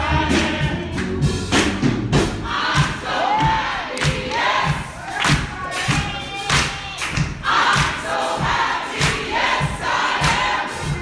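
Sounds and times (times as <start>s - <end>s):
congregation singing gospel song: 0.0s - 11.0s
hand claps: 3.9s - 8.0s, 9.0s - 9.4s.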